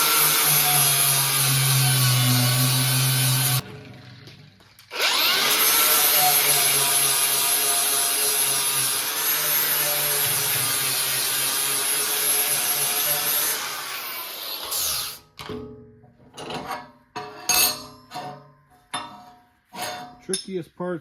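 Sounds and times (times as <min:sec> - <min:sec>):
power grinder whining on metal: 0:00.0 - 0:15.2.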